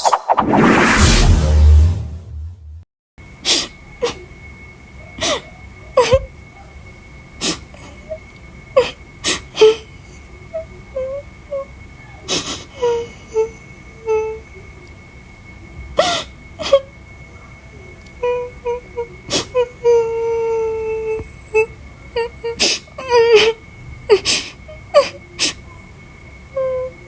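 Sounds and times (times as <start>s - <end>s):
woman crying and sobbing: 3.5s - 4.3s, 5.2s - 6.3s, 8.8s - 14.6s, 18.2s - 25.9s.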